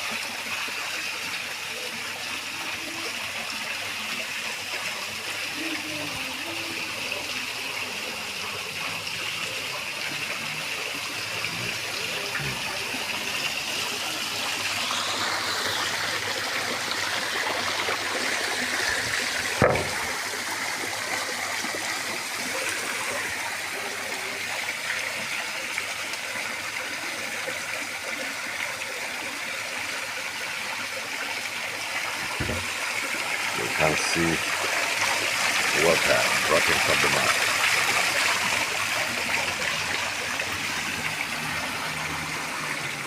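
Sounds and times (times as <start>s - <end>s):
water fountain splashing: 0.0s - 43.0s
sharp knock: 19.6s - 20.0s.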